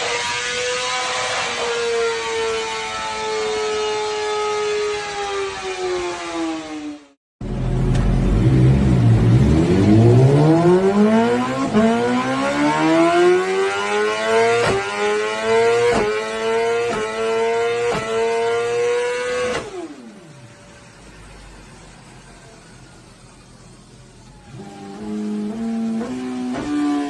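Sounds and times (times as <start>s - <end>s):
motorcycle engine accelerating hard: 6.7s - 22.6s, 24.2s - 27.0s
exhaust cracks: 7.4s - 10.2s.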